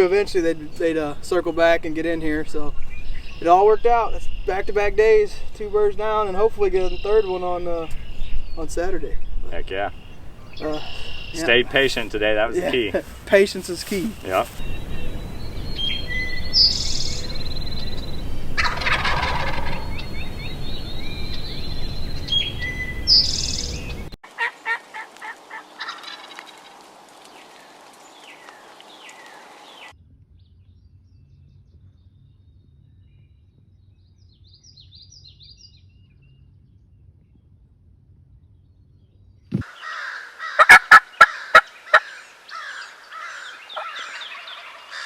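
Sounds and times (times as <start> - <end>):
bird chirps: 5.8 - 26.6, 39.5 - 45.0
turkey gobbling: 10.3 - 14.6, 18.6 - 20.0, 24.3 - 26.8, 39.6 - 45.0.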